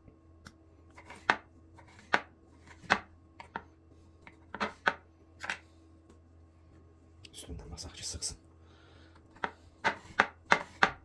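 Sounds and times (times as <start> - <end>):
knife chopping on cutting board: 1.0 - 3.6, 9.3 - 11.0.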